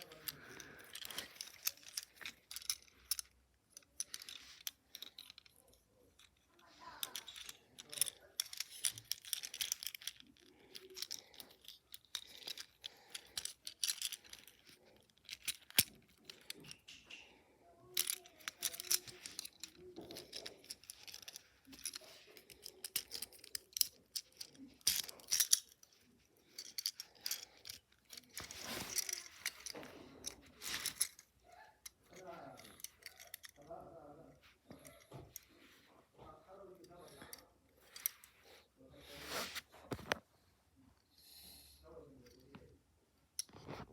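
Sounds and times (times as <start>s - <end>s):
plastic toy parts clicking: 0.0s - 33.8s.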